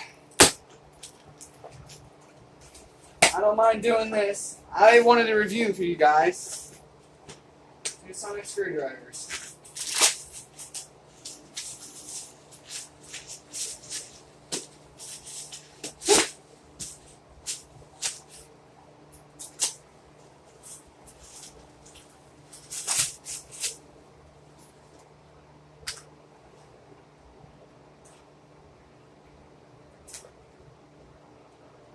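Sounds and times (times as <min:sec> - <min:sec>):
faint steady hum: 0:00.0 - 0:31.9
plastic packaging rustling: 0:09.2 - 0:18.5, 0:20.5 - 0:23.8.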